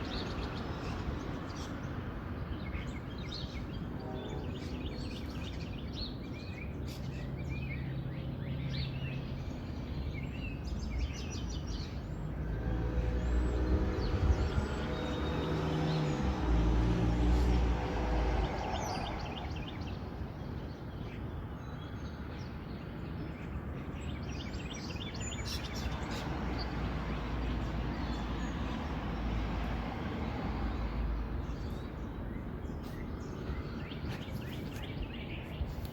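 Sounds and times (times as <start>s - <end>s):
small birds chirping: 18.5s - 35.9s.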